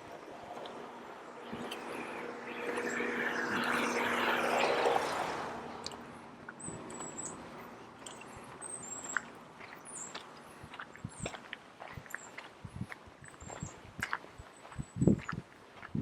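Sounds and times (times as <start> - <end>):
motor vehicle passing: 0.0 - 11.4
high bird chirps: 1.3 - 5.1, 5.8 - 10.3
footsteps on trail: 5.8 - 16.0.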